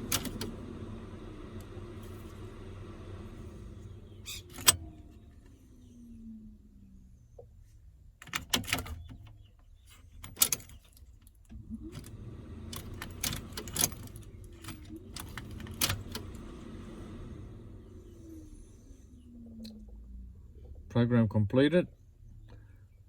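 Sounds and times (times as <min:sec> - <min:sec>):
ignition switch clicking: 0:00.0 - 0:05.5, 0:11.9 - 0:17.5
steady low hum: 0:00.0 - 0:23.0
car keys jangling: 0:10.0 - 0:11.3, 0:12.8 - 0:16.4.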